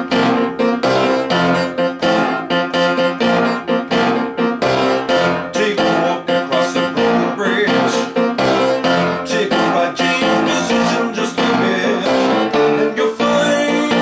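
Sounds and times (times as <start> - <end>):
piano playing chords: 0.0 - 14.0.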